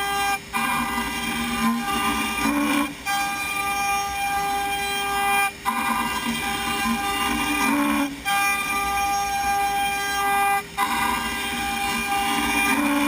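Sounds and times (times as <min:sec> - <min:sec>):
router spindle whine milling wood: 0:00.0 - 0:13.0.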